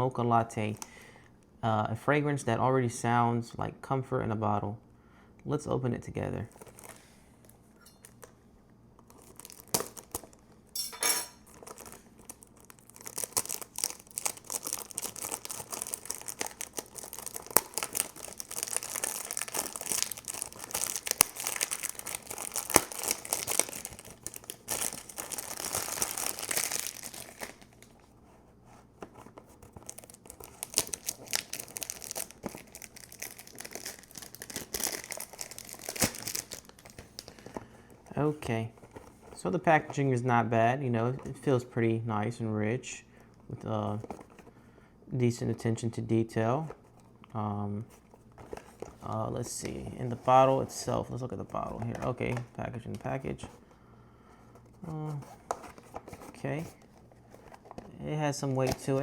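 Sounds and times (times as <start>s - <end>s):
wrapping crinkling and tearing: 6.4s - 8.4s, 9.0s - 40.0s, 43.8s - 44.6s, 47.9s - 53.7s, 54.4s - 59.0s
box rustling: 11.4s - 38.0s, 38.7s - 40.0s, 47.9s - 52.6s, 54.6s - 59.0s.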